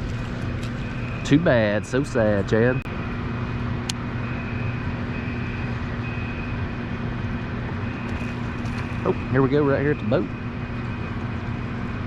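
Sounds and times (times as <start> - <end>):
motor humming with high whine: 0.0 - 12.0.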